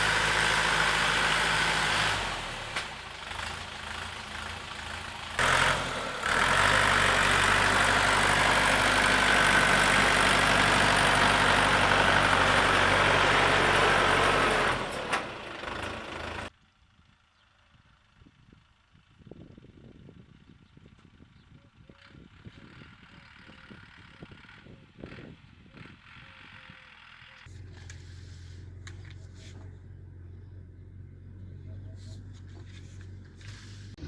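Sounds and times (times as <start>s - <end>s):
tractor diesel engine with tiller: 0.0s - 34.0s.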